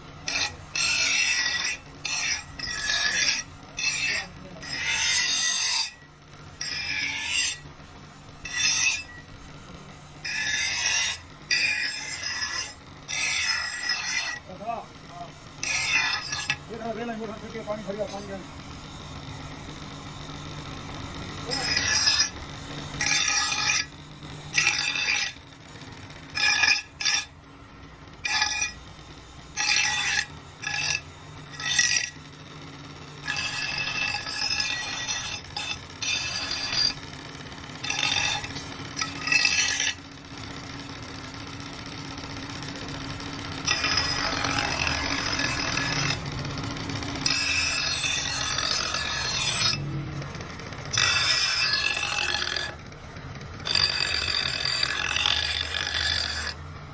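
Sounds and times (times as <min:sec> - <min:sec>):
abrasive scraping cleaver blade: 0:00.2 - 0:06.0, 0:08.5 - 0:09.2, 0:15.6 - 0:16.7, 0:21.5 - 0:22.4, 0:24.5 - 0:25.4, 0:26.4 - 0:27.4, 0:29.6 - 0:32.2, 0:33.2 - 0:37.0, 0:43.6 - 0:46.2, 0:47.2 - 0:49.9, 0:50.9 - 0:52.8.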